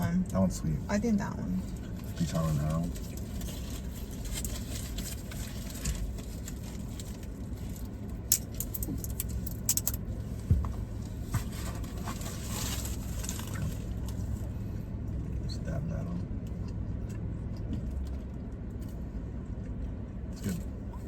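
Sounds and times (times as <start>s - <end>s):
car cabin engine hum: 0.0s - 21.0s
takeout containers clicking and scraping: 11.4s - 14.2s.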